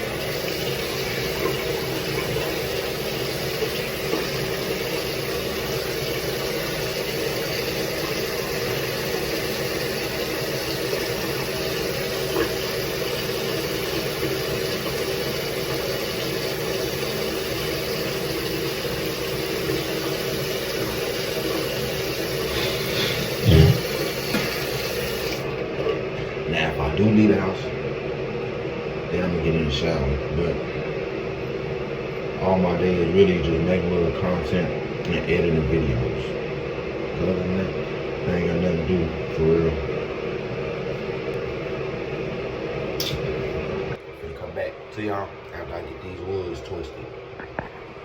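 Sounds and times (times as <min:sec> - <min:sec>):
tap water running into sink: 0:00.0 - 0:25.9.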